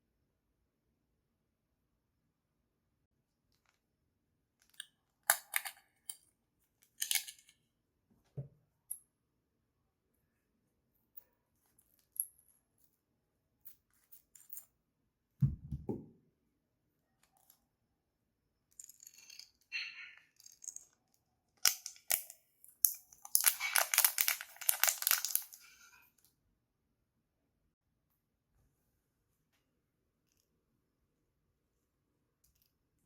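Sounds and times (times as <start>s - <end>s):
dull thump: 15.4s - 16.2s.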